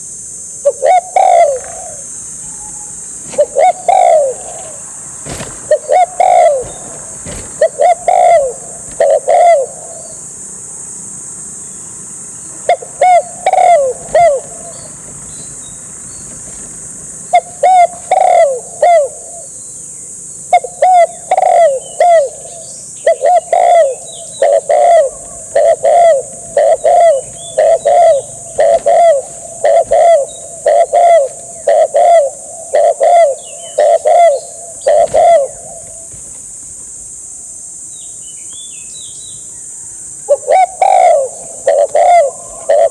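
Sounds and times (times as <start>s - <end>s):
dove cooing from a speaker: 0.0s - 10.4s, 12.4s - 19.8s, 20.4s - 37.0s, 40.2s - 42.9s.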